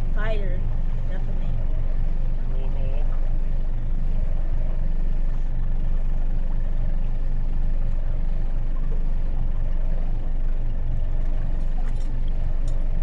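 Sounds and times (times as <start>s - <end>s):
outboard motor droning: 0.0s - 13.0s.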